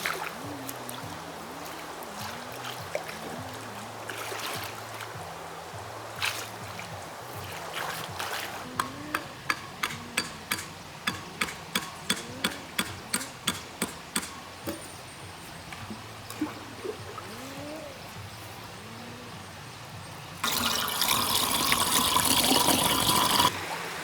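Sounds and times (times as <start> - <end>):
water gurgling: 0.0 - 24.0
water splashing and trickling: 0.0 - 24.0
sharp regular water slaps: 6.1 - 15.0.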